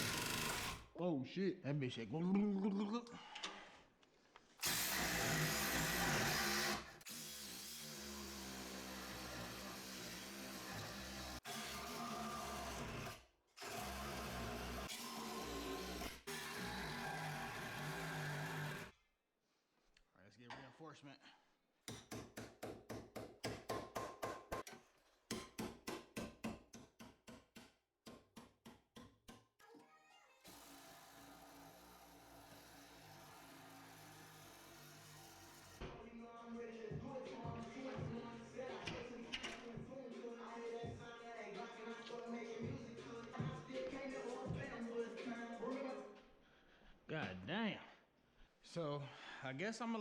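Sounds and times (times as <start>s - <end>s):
power tool running: 0.0s - 0.8s, 4.6s - 18.9s, 30.4s - 35.8s.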